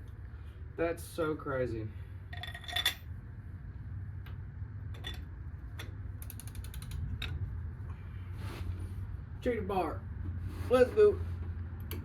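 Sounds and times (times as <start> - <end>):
metal tools clinking: 2.3 - 3.1
socket ratchet clicking: 6.2 - 7.4.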